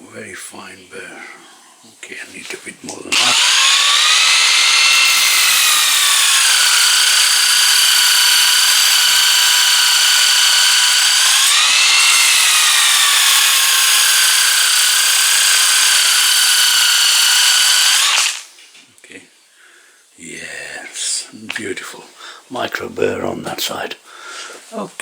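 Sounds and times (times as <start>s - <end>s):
electric sander grinding metal: 3.1s - 18.5s.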